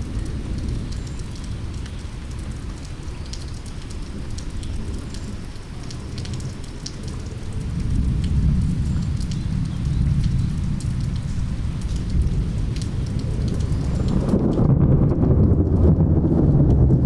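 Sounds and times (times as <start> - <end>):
steady rain: 0.0 - 17.0
deep low rumble: 7.8 - 17.0.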